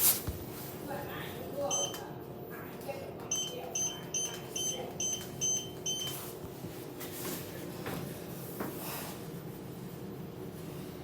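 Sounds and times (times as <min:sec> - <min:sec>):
elevator short high beeps: 0:01.7 - 0:02.0, 0:03.3 - 0:06.2.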